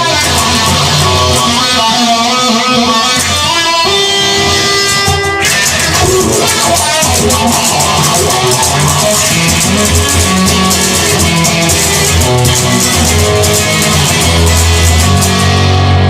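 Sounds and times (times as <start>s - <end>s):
instrumental rock music: 0.0s - 16.0s.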